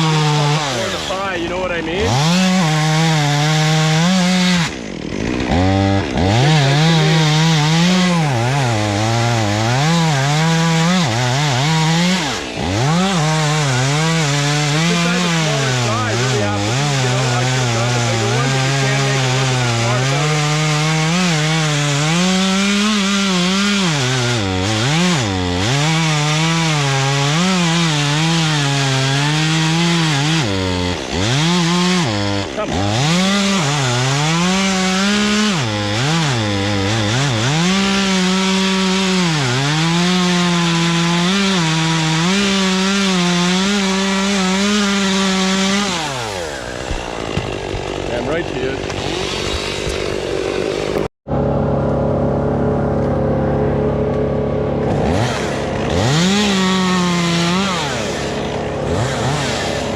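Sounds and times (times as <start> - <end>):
chainsaw cutting wood: 0.0 - 59.9.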